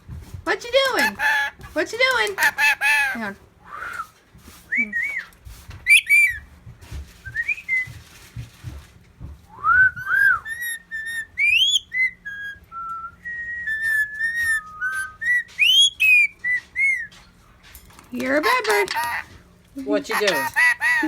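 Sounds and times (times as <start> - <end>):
bird whistling: 5.9 - 6.4, 9.6 - 17.1.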